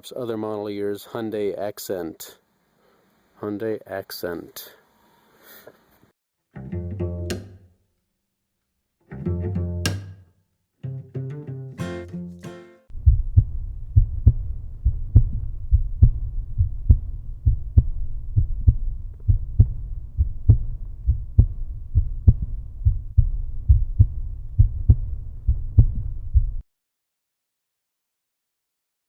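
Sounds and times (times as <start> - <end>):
plucked-string phrase: 6.5 - 7.8, 9.0 - 10.2, 10.8 - 12.9
deep thudding bass beat: 12.9 - 26.6.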